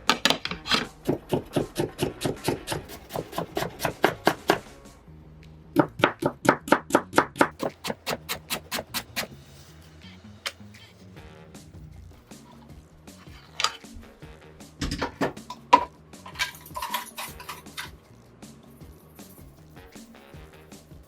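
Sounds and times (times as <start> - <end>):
soft background music: 0.0 - 21.0
knife chopping on cutting board: 0.1 - 4.7, 5.8 - 9.3.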